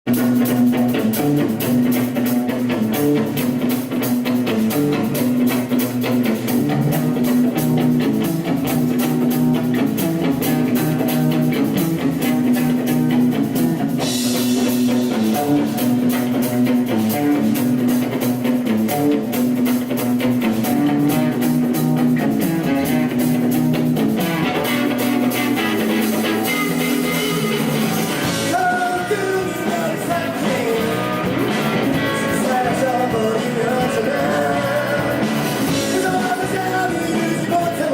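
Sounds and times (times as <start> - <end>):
rock band playing live: 0.0 - 37.9.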